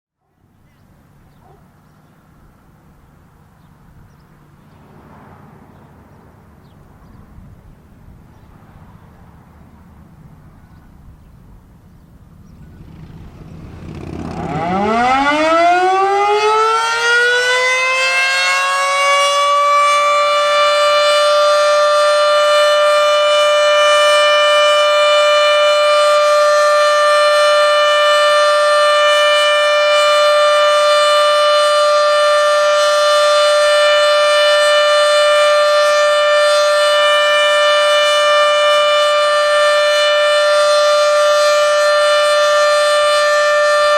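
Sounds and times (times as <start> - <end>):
warning siren winding up: 12.9 - 43.9.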